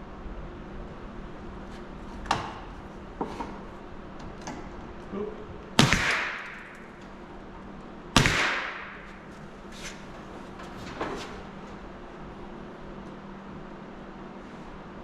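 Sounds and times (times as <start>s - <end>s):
nail gun firing with air hiss: 5.8s - 7.0s, 8.2s - 10.1s.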